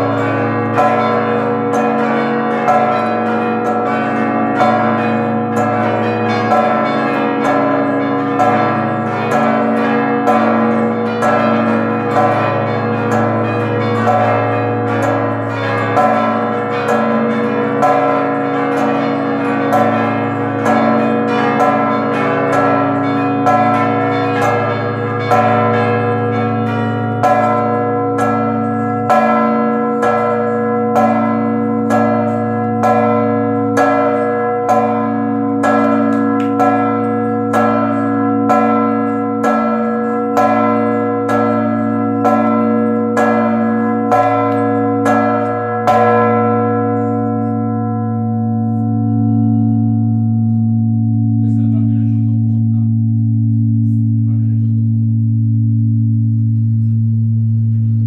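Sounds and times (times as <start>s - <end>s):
church bells ringing: 0.0s - 58.0s.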